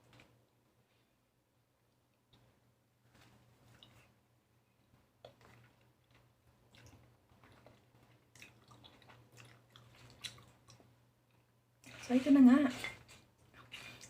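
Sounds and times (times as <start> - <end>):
person chewing with mouth clicks: 5.2 - 12.0.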